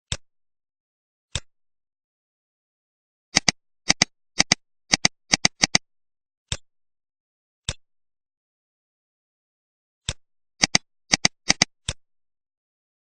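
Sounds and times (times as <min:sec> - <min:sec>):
computer mouse clicks: 0:03.4 - 0:05.8, 0:10.1 - 0:12.0.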